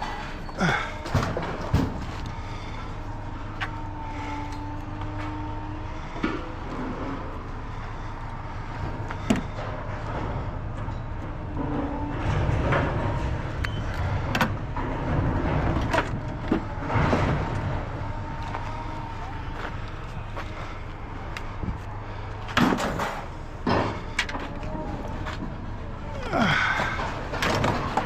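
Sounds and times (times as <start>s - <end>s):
sharp knocks and clanks: 0.0s - 2.6s, 22.5s - 24.6s
vehicle engine running: 0.0s - 28.0s.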